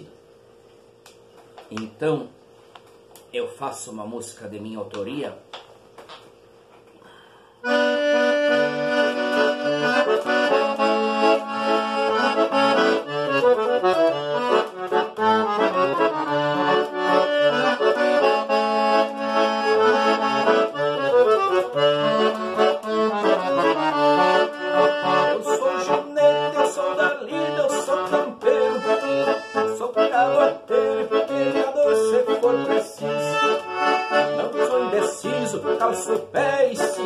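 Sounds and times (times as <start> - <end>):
accordion melody: 7.6 - 37.0.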